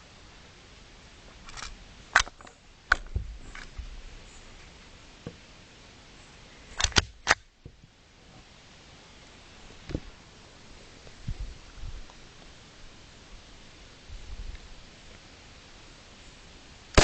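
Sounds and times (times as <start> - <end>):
pistol mechanism clicking: 6.8 - 7.4.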